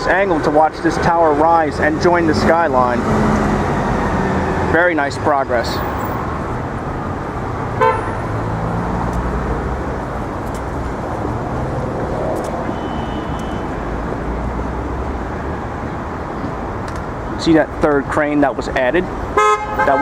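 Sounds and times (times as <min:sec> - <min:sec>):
vehicle engines passing: 0:00.0 - 0:20.0
car horn toot: 0:07.8 - 0:08.2, 0:12.7 - 0:13.7, 0:19.4 - 0:20.0.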